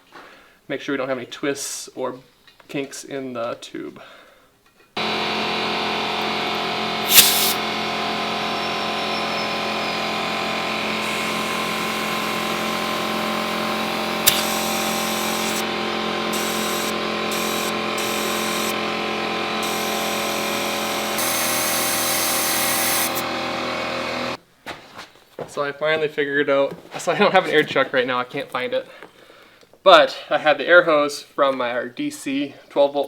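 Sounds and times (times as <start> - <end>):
air compressor motor running: 5.0 - 24.4
short sharp hiss: 7.0 - 7.6
click: 14.2 - 14.5.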